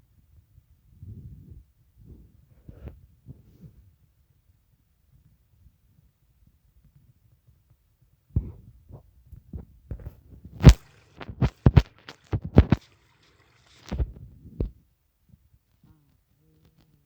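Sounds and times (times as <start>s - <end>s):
knocks and thumps: 9.9s - 12.8s.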